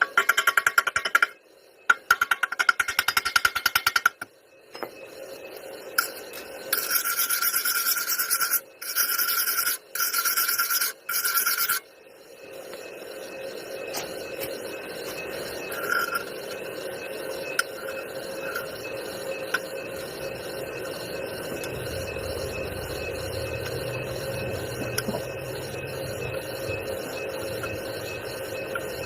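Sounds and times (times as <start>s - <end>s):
metal scraping on metal: 6.0s - 11.8s.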